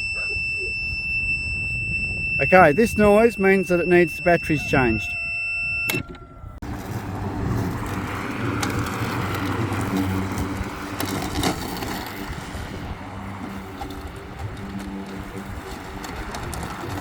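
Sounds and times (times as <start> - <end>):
lawn mower humming: 6.6 - 17.0.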